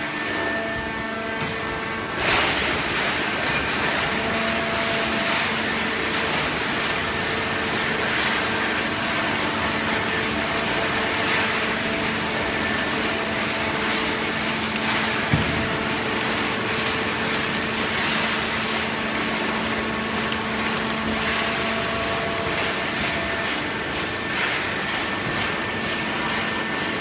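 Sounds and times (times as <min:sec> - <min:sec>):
hydraulic baler humming: 0:08.4 - 0:25.2.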